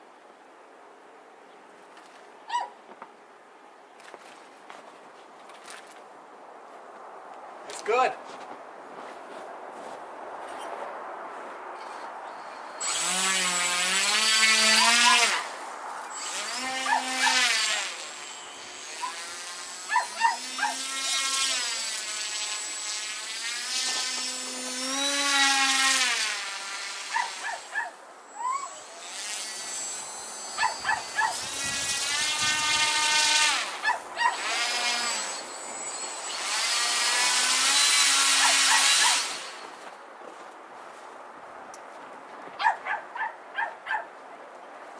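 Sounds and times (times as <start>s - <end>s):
small electric motor whining: 11.8s - 39.7s.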